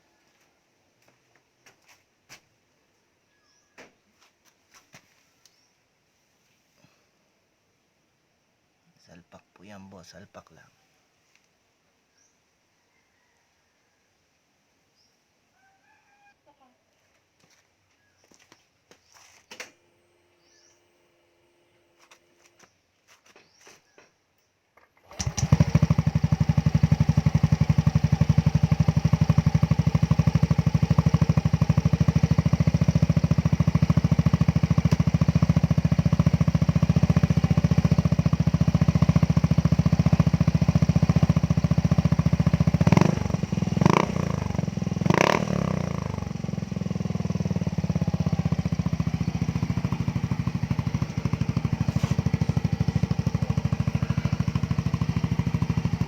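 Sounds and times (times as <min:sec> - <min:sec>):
scooter engine idling: 0:25.0 - 0:56.0.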